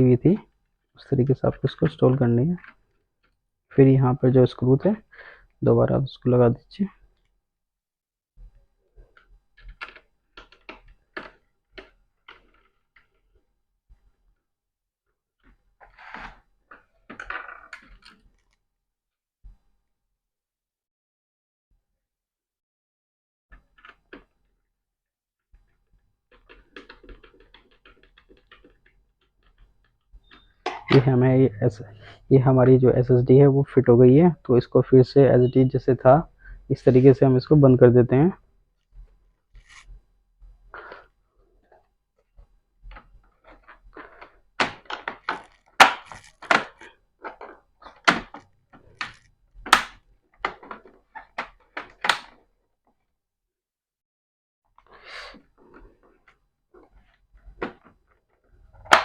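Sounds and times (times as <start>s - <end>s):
plastic laptop casing clicking: 9.1s - 13.2s, 26.3s - 31.0s, 42.9s - 52.4s, 58.8s - 59.0s.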